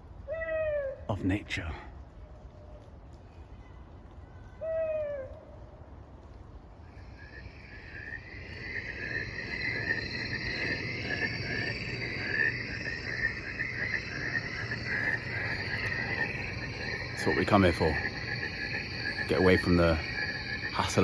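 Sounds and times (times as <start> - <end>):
chorus of rapid animal calls: 7.0 - 21.0.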